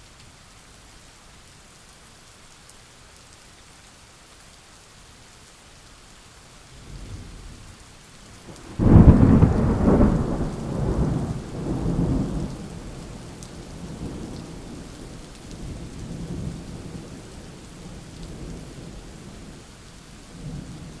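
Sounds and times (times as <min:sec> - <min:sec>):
steady rain: 0:00.0 - 0:21.0
thunder rumbling: 0:08.5 - 0:17.1
loud thunderclap: 0:08.6 - 0:13.0.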